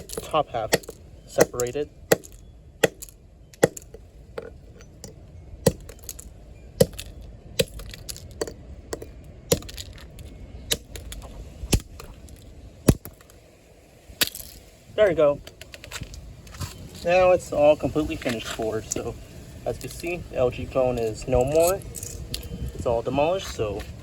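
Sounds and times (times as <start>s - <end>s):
hammer cracking phone: 0.0s - 12.1s.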